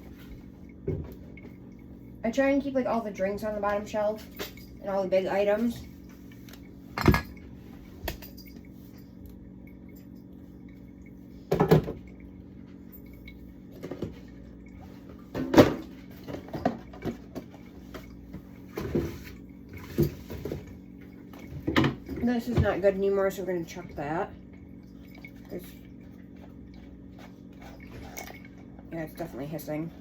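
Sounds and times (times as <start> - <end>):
steady low hum: 0.0 - 30.0.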